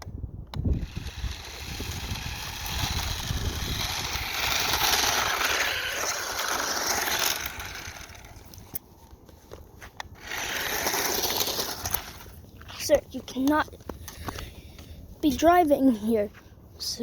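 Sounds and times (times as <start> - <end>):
toy car motor whirring: 0.5 - 8.8, 10.1 - 12.3.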